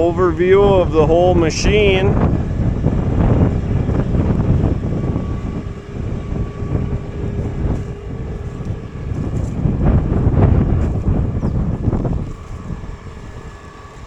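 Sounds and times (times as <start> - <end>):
tractor engine running: 0.0 - 14.0
wind buffeting microphone: 0.0 - 14.0.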